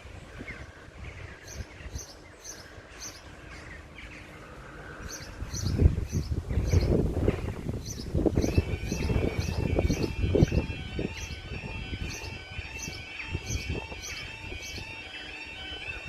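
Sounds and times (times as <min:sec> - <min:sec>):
bird repeating high chirp: 0:07.8 - 0:16.0.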